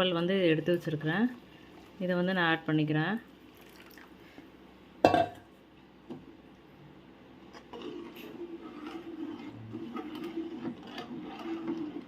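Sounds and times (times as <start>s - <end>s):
faint liquid sounds: 3.2s - 4.6s
curry bubbling in pan: 7.4s - 12.0s.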